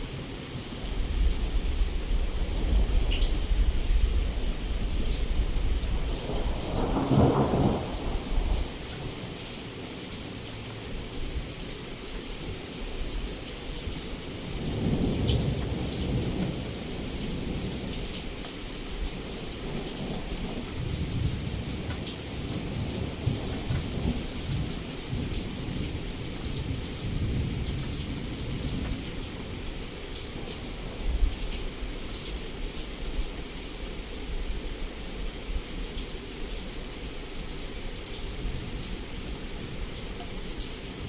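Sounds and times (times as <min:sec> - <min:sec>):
heavy rain on a window: 0:00.0 - 0:41.0
thunder rumbling: 0:01.0 - 0:08.8, 0:14.5 - 0:18.2, 0:19.6 - 0:29.7.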